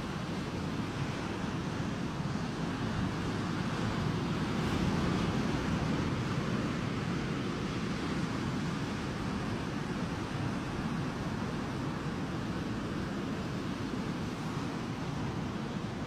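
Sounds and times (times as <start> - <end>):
sea surf washing on shore: 0.0 - 16.0.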